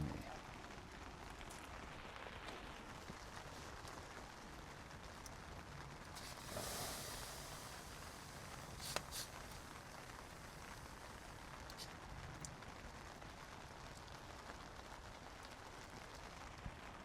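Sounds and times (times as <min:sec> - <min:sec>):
light rain falling: 0:00.0 - 0:17.0
rustle: 0:00.0 - 0:17.0.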